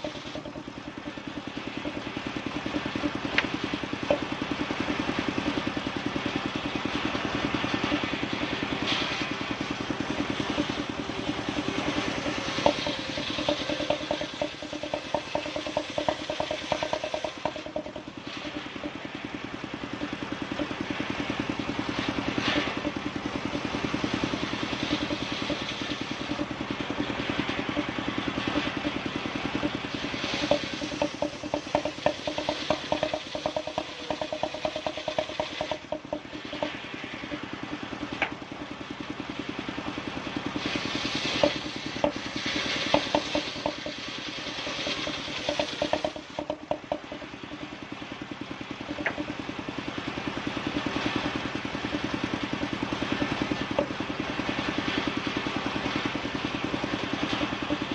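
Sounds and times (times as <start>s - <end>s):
small engine running: 0.0s - 57.9s
rattling: 10.2s - 19.2s, 22.4s - 37.4s.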